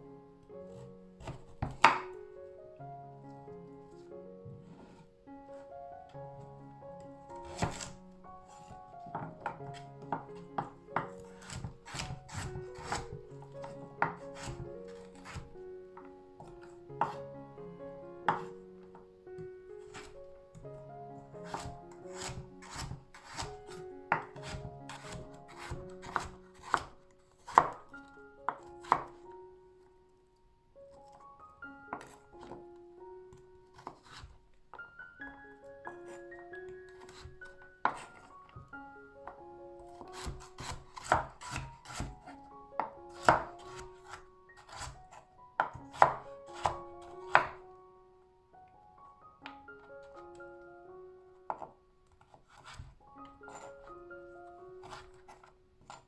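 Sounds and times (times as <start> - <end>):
soft background music: 0.0 - 56.0
knife chopping on cutting board: 0.7 - 2.2, 7.3 - 15.5, 18.3 - 18.5, 19.8 - 20.7, 21.3 - 27.9, 28.5 - 29.2, 31.9 - 32.6, 33.8 - 34.4, 36.9 - 38.7, 39.9 - 47.6, 51.5 - 52.9, 53.5 - 53.7, 54.8 - 56.0.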